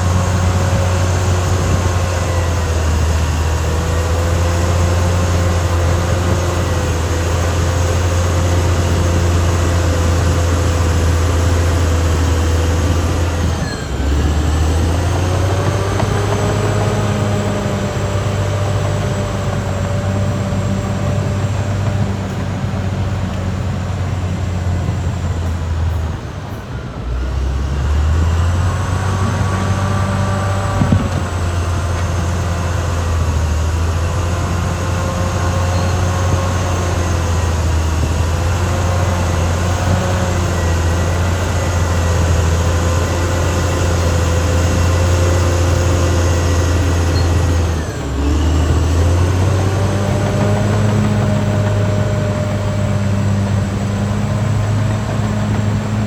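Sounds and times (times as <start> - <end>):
bulldozer diesel drone: 0.0 - 56.0
whining tracks and drivetrain: 0.0 - 56.0.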